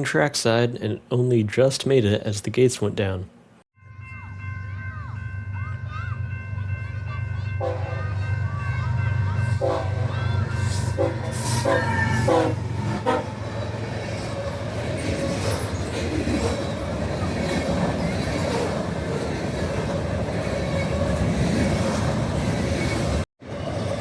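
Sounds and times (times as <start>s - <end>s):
freight train rolling: 4.3s - 24.0s
train horn blasts: 7.6s - 13.4s.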